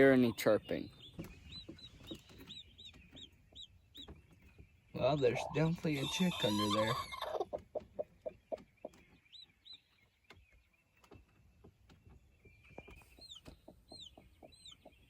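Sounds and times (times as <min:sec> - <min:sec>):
chick peeping: 0:00.0 - 0:15.0
hen clucking softly: 0:05.0 - 0:09.0, 0:12.9 - 0:15.0.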